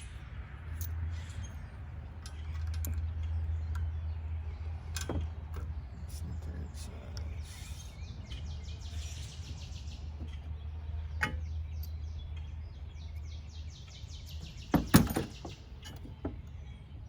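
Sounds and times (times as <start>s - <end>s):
hand tools clanking on metal: 0.7s - 4.0s, 4.8s - 5.7s, 11.1s - 12.1s, 14.3s - 16.6s
bird trilling chirps: 6.1s - 17.0s.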